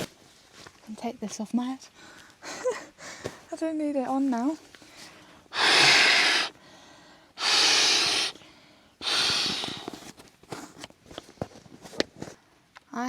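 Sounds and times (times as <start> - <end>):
person blowing hard: 5.5 - 6.6, 7.4 - 8.4, 9.0 - 10.1.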